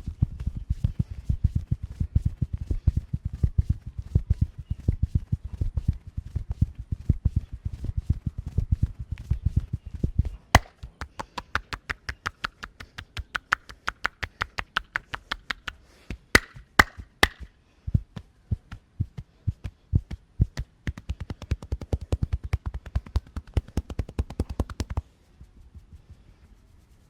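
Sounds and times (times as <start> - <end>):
hands chopping and tapping on body: 10.6 - 17.5, 18.1 - 25.0
sharp slaps: 10.6 - 17.6, 20.6 - 25.1.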